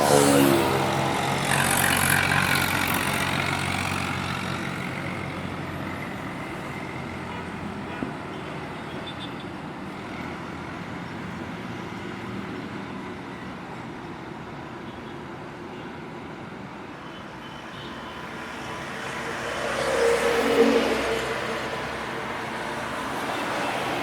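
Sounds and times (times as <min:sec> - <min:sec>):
vehicle approaching: 0:00.0 - 0:07.3, 0:18.3 - 0:24.0
highway traffic noise: 0:00.0 - 0:24.0.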